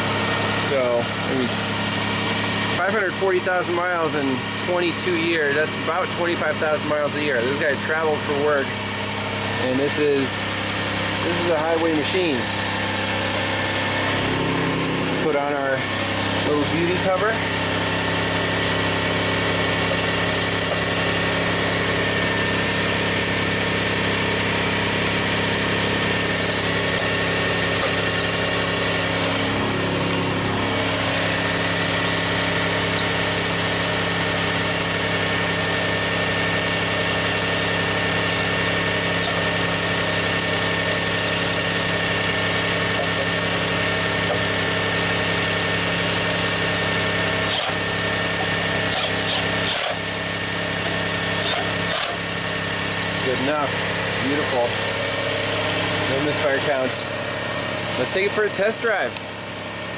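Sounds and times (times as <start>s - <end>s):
car engine idling: 52.2s - 58.0s.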